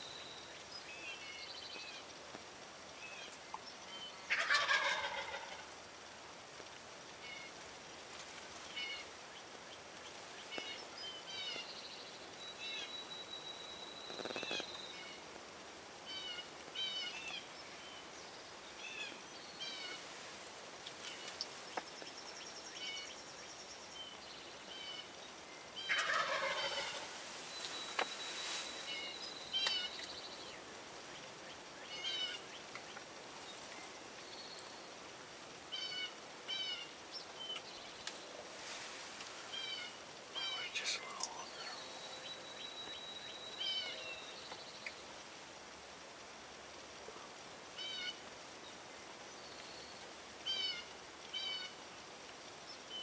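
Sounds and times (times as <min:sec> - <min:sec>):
wild turkey gobbling: 0:04.3 - 0:05.8, 0:25.8 - 0:28.1
small birds chirping: 0:08.7 - 0:15.2, 0:16.1 - 0:45.2.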